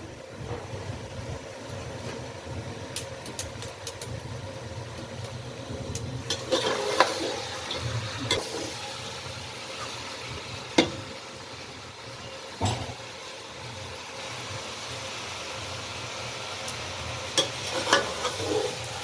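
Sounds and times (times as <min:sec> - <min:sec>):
food sizzling in pot: 0:00.0 - 0:19.0
ladle knocking and scraping pot: 0:06.3 - 0:08.7, 0:17.4 - 0:18.9.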